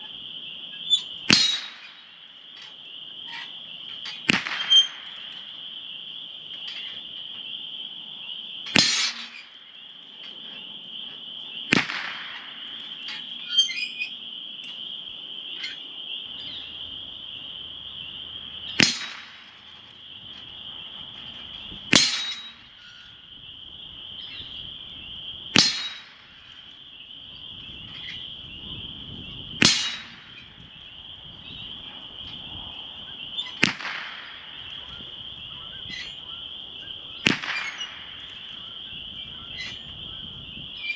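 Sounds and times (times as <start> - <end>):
rifle shots: 1.3 - 2.1, 4.2 - 5.5, 8.7 - 9.5, 11.7 - 13.0, 18.8 - 19.8, 33.6 - 34.9, 37.2 - 38.6
high-pitched insect drone: 12.5 - 33.6.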